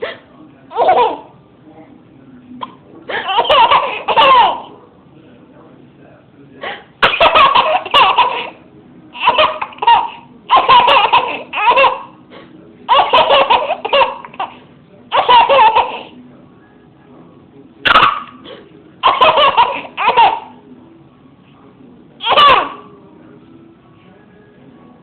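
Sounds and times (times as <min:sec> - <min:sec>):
baby giggling: 0:00.7 - 0:01.3, 0:03.1 - 0:04.7, 0:07.0 - 0:08.6, 0:09.2 - 0:12.2, 0:12.9 - 0:16.2, 0:19.0 - 0:20.6.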